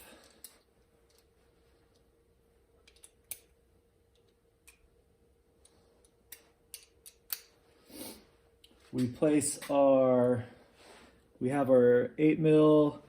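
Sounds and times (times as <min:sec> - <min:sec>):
small metal parts clicking: 0:00.0 - 0:01.3, 0:02.8 - 0:03.5, 0:05.6 - 0:07.5
faint room hum: 0:00.0 - 0:13.0.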